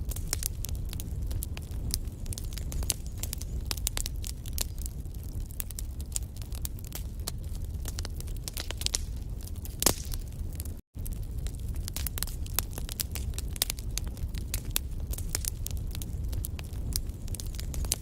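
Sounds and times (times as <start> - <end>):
flames rumbling: 0.0 - 18.0
logs crackling and popping: 0.0 - 18.0.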